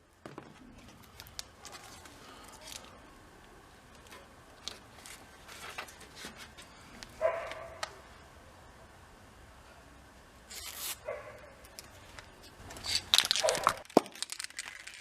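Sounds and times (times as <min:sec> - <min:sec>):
dog barking: 0:07.2 - 0:07.8, 0:11.0 - 0:11.6, 0:13.4 - 0:13.8.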